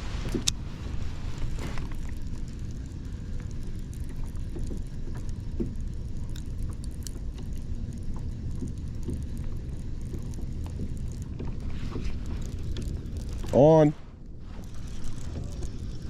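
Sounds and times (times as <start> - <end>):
steady low rumble: 0.0 - 16.0
light clicks and taps: 1.4 - 13.6.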